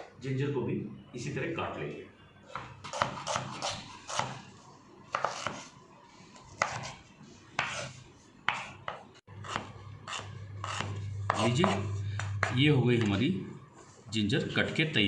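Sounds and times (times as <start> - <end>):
knife chopping on board: 2.6 - 4.4, 6.6 - 7.0, 8.5 - 13.1.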